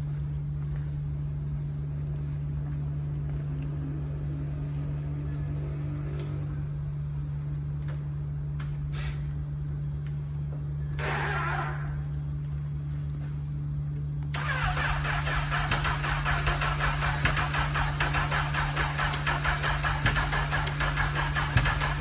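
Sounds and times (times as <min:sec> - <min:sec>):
motorcycle engine running: 0:14.6 - 0:22.0.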